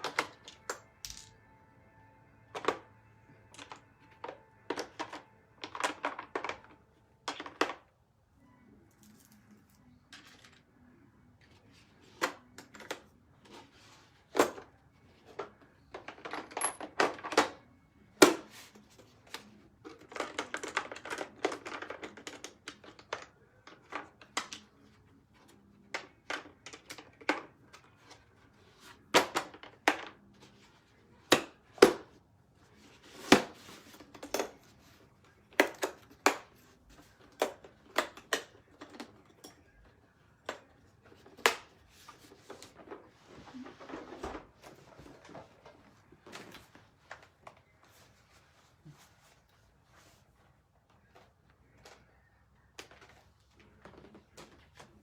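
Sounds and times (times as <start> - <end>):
objects clicking and knocking: 0.0 - 1.5, 2.5 - 7.9, 14.3 - 17.6
objects rattling: 12.0 - 17.6.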